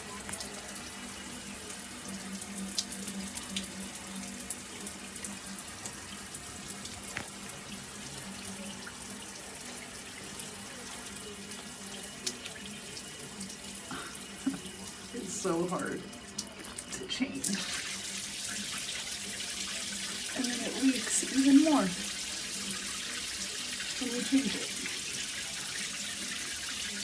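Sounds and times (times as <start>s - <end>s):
water spraying from shower head: 13.8s - 16.2s, 20.3s - 22.2s, 23.7s - 25.4s.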